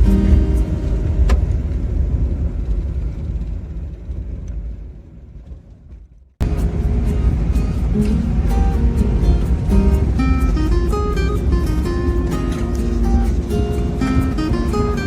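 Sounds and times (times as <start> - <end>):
background music: 0.0 - 1.6, 6.4 - 15.0
car road rumble: 0.0 - 15.0.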